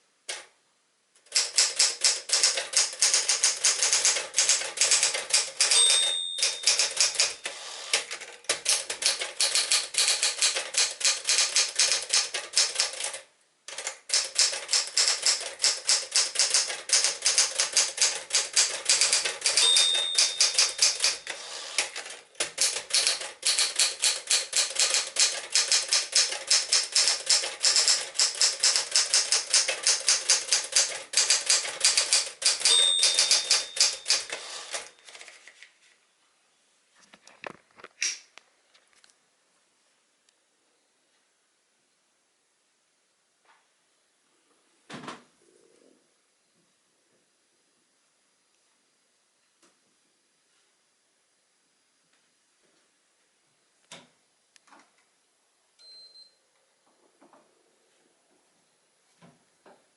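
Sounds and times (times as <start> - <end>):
manual typewriter typing: 1.2 - 35.5
typewriter margin bell ringing: 1.4 - 8.0, 8.7 - 12.9, 14.1 - 21.9, 22.6 - 34.9.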